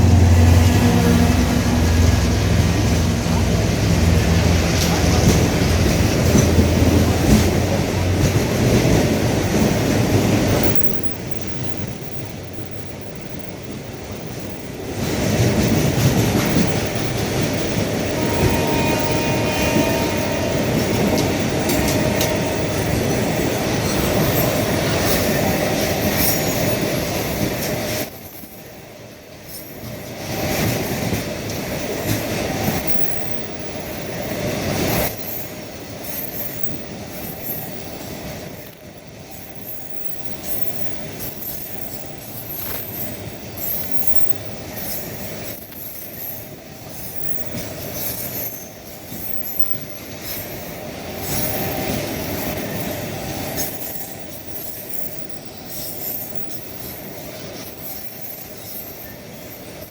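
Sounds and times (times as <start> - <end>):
train wheels rumbling on rails: 0.0 - 59.9
faint wheel squeal: 18.0 - 25.2.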